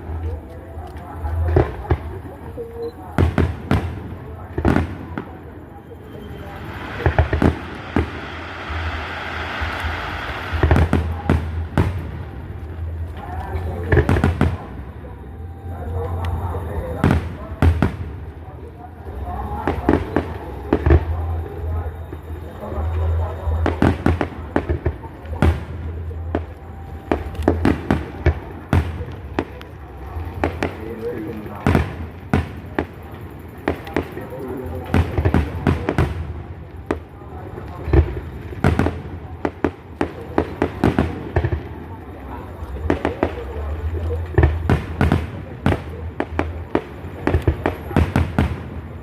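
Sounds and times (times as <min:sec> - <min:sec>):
steady low rumble: 0:00.0 - 0:31.1
fireworks bangs: 0:01.3 - 0:49.0
fireworks hissing crackle: 0:03.4 - 0:15.1, 0:19.2 - 0:49.0
low rumble: 0:06.4 - 0:13.9.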